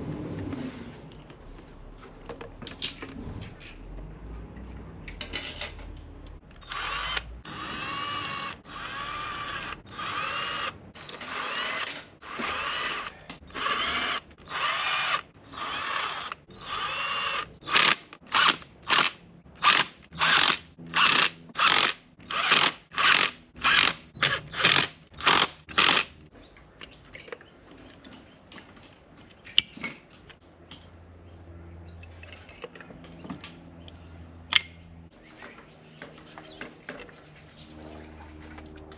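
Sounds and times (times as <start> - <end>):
cordless drill motor whining: 6.5 - 26.1.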